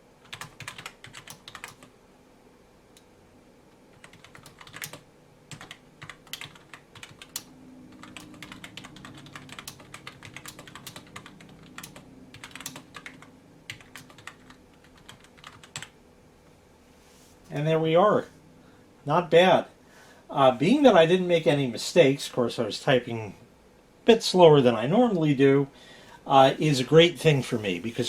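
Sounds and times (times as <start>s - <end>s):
typing on rubber-dome keyboard: 0.2s - 1.9s, 3.9s - 15.9s.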